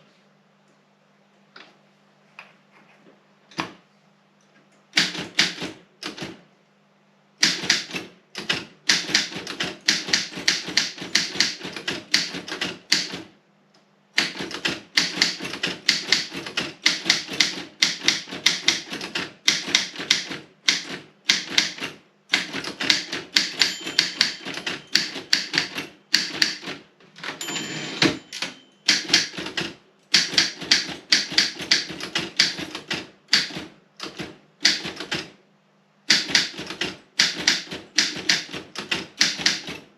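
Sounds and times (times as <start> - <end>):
typewriter key strikes: 7.4 - 13.3, 14.2 - 35.3, 36.1 - 39.9.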